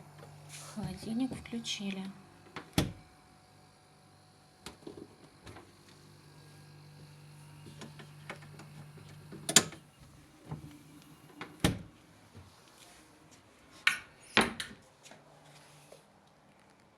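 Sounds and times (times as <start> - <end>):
refrigerator hum: 0.0 - 12.5.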